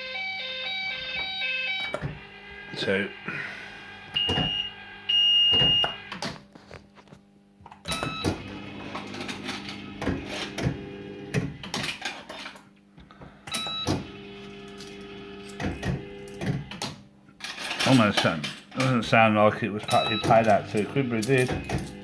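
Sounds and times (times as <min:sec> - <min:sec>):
electronic tones: 0:04.0 - 0:06.1, 0:19.9 - 0:20.8
coins clicking metallically: 0:14.4 - 0:16.4, 0:19.8 - 0:22.0.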